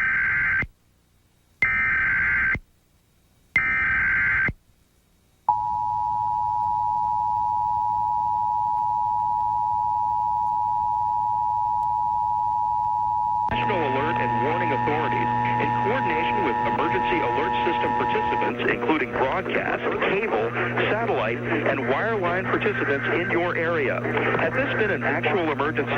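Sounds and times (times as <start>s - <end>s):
warbling digital header tones: 5.5s - 19.7s.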